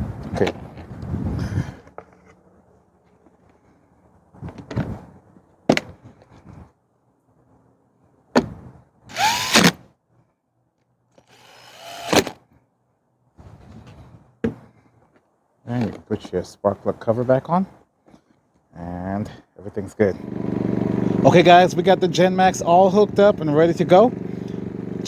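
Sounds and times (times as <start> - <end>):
cordless driver whirring: 9.1 - 9.8, 11.2 - 12.4.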